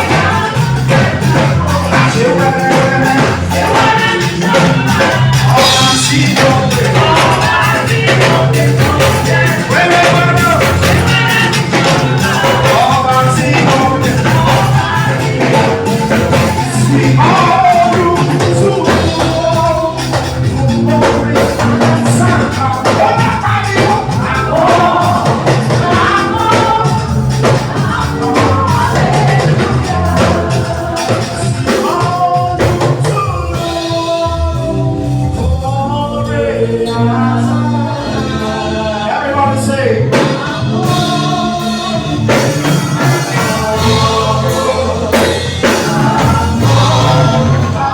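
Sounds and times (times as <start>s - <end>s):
live band music: 0.0s - 47.9s
person singing: 0.0s - 47.9s
steady bass line: 0.0s - 47.9s.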